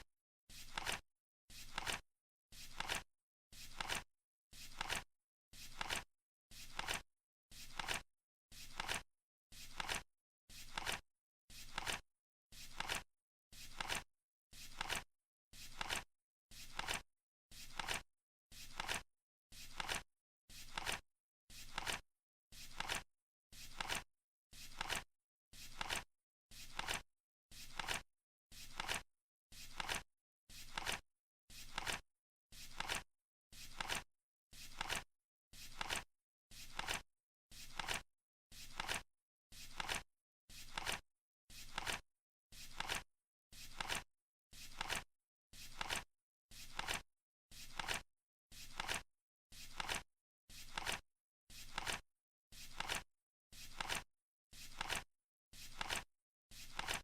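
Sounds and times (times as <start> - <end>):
flip-clock flipping rustle: 0.6 - 1.0, 1.6 - 2.0, 3.7 - 4.0, 19.7 - 20.0, 23.7 - 24.0, 24.7 - 25.0, 28.7 - 29.0, 29.7 - 30.0, 30.7 - 31.0, 33.7 - 34.0, 34.7 - 35.0, 37.7 - 38.0, 38.7 - 39.0, 39.7 - 40.0, 40.7 - 41.0, 42.7 - 43.0, 43.7 - 44.0, 44.7 - 45.0, 46.7 - 47.0, 48.7 - 49.0, 49.7 - 50.0, 51.7 - 52.0, 53.7 - 54.0, 54.7 - 55.0, 55.7 - 56.0, 56.7 - 57.0.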